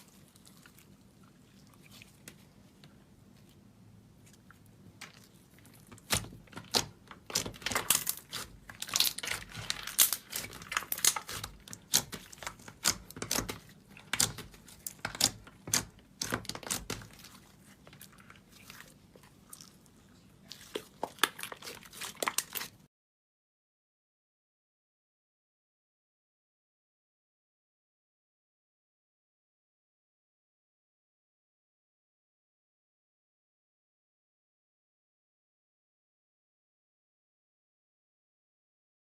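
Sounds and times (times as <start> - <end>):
slime crackling and popping: 5.7 - 18.8, 20.6 - 22.8.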